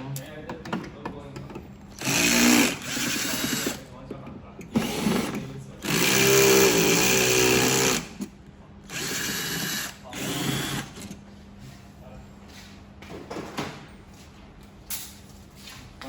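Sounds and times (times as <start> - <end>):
power drill-driver whining: 2.0 - 3.8, 8.9 - 11.2.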